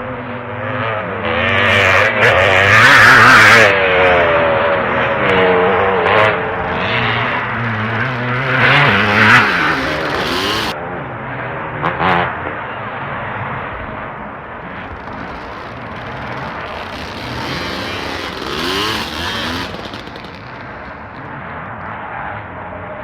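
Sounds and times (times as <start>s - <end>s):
motocross engines revving: 6.0s - 10.8s, 14.6s - 21.8s.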